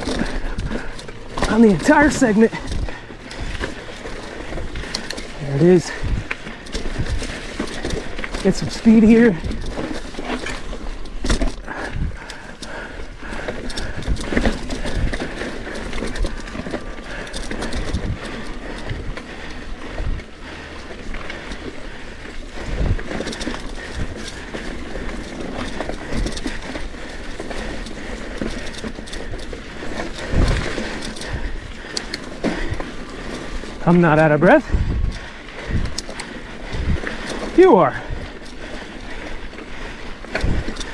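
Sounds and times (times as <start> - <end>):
person breathing hard: 0.0 - 1.5, 11.3 - 33.8
bike knocks and rattles: 0.0 - 40.9
bike tyres rolling over rock: 0.0 - 40.9.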